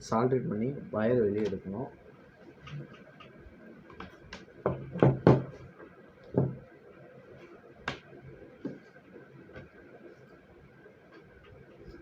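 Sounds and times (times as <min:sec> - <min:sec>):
tools knocking on work surface: 0:04.6 - 0:05.6, 0:06.4 - 0:06.6.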